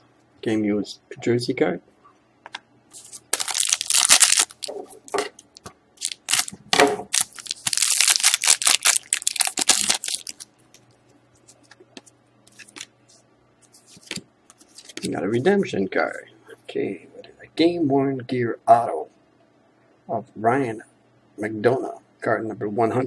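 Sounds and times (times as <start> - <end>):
card pack wrapper crinkling and tearing: 3.0 - 4.8, 6.0 - 10.5.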